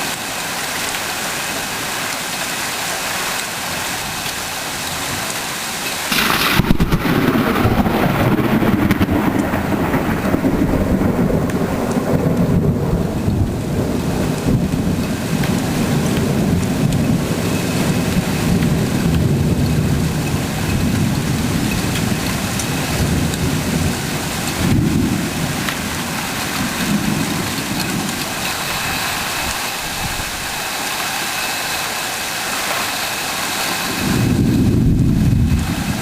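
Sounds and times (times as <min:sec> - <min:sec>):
steady rain: 0:00.0 - 0:36.0
thunder rumbling: 0:06.1 - 0:31.7, 0:33.7 - 0:36.0.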